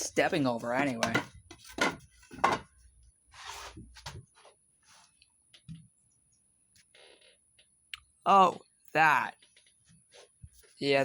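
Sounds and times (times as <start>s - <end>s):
objects knocking and clattering: 0.0s - 2.9s.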